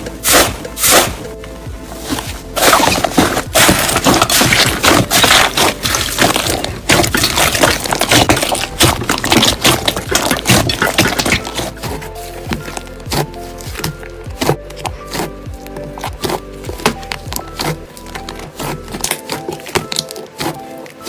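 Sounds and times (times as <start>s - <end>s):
slime squelching and crackling: 1.9s - 21.0s.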